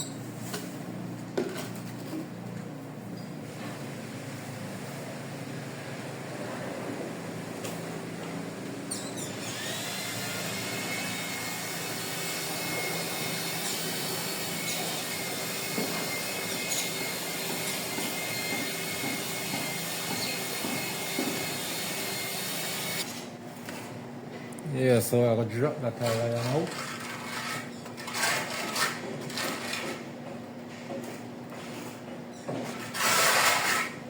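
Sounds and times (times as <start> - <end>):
power tool motor whining: 9.3 - 23.2.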